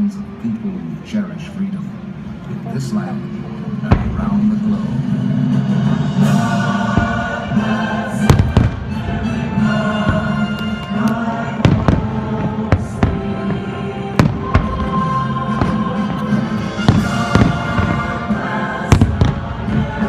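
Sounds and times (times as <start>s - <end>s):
music: 0.0s - 20.0s
fireworks bangs and booms: 3.9s - 4.5s, 6.9s - 20.0s.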